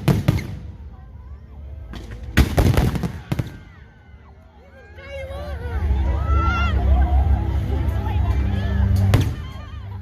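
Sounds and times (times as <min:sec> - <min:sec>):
firework cracks: 0:02.0 - 0:03.8.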